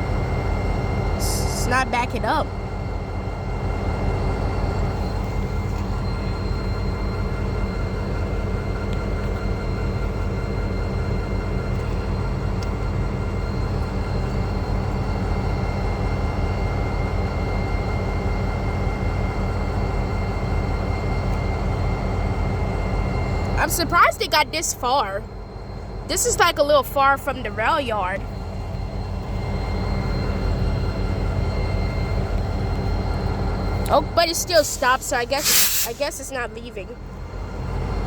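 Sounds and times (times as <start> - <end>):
diesel locomotive idling: 0.0 - 6.4, 23.4 - 28.6, 31.1 - 37.5
faint steady tones: 23.2 - 37.0.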